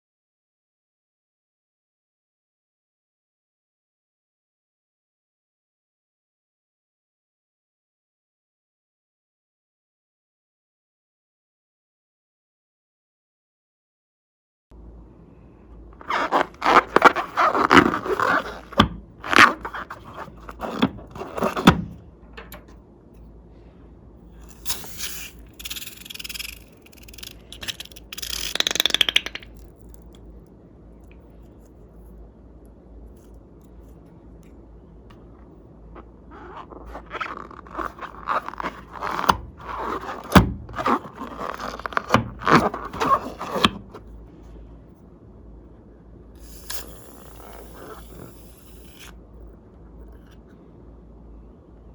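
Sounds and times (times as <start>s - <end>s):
slime squishing and crackling: 16.0s - 21.7s, 24.5s - 30.0s, 36.4s - 43.7s
short hiss: 24.4s - 26.6s.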